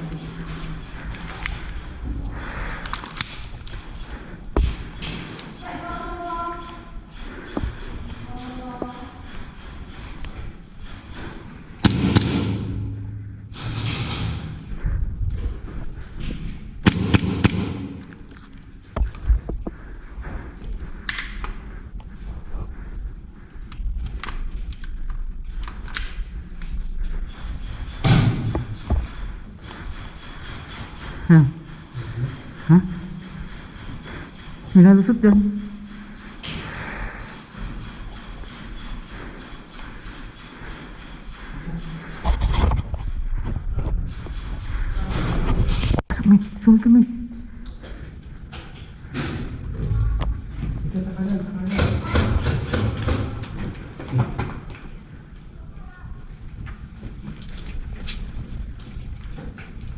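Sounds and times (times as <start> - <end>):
airsoft gun shots: 11.8 - 13.0, 16.8 - 18.2.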